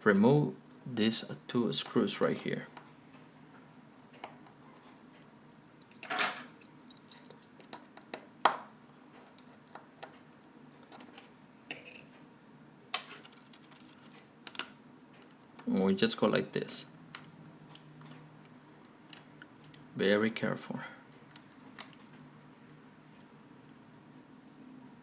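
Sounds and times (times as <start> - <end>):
small metallic clicks of tools: 21.2 - 22.3.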